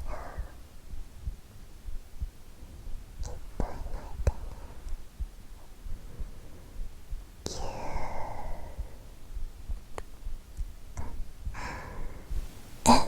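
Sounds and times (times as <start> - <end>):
heartbeat: 0.0 - 13.0
short breaths: 11.5 - 12.6.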